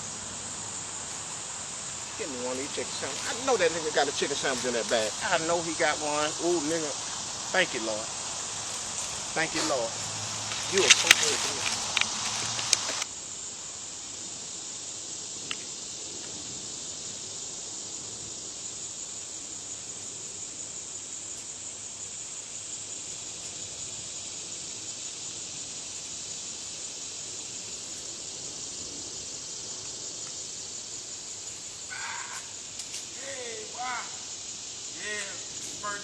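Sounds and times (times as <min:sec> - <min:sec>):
insect chorus: 0:00.0 - 0:36.0
bird call: 0:31.9 - 0:32.6.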